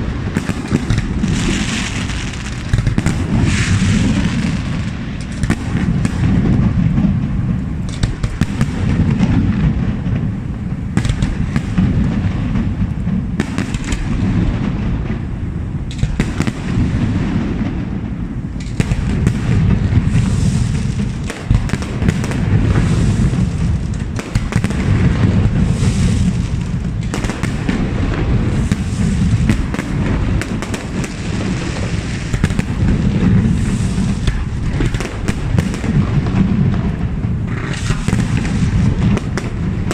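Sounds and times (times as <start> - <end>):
fireworks bursts and booms: 0.0 - 39.9
sharp firework bangs: 0.0 - 39.9.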